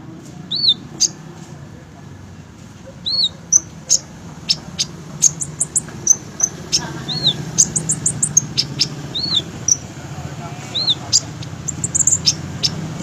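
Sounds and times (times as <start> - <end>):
bird whistle: 0.5 - 1.2, 3.0 - 9.8, 10.7 - 12.8
bird singing high chips: 0.5 - 1.3, 2.9 - 10.0, 10.7 - 13.0.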